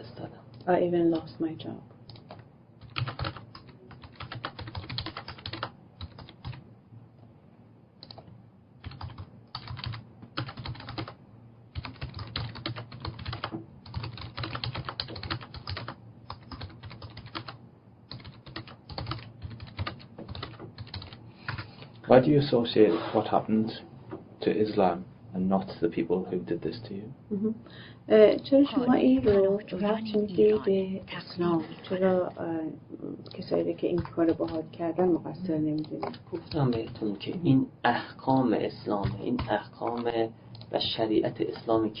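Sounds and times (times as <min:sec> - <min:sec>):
computer keyboard typing: 0:02.1 - 0:06.6, 0:08.0 - 0:21.7, 0:29.2 - 0:29.5, 0:33.2 - 0:34.6, 0:35.7 - 0:37.2, 0:38.3 - 0:40.8.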